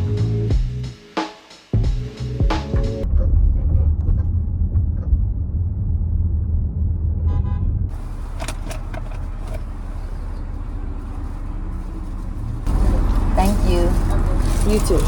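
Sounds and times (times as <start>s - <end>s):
car road rumble: 3.0s - 15.0s
car horn toot: 7.3s - 10.9s.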